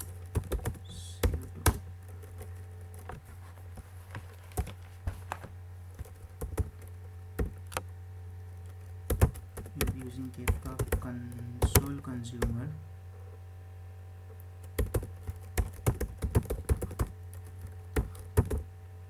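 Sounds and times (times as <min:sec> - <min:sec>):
keyboard typing: 0:00.0 - 0:03.2, 0:05.9 - 0:07.9, 0:08.6 - 0:12.6, 0:14.3 - 0:18.7
steady low hum: 0:00.0 - 0:19.0.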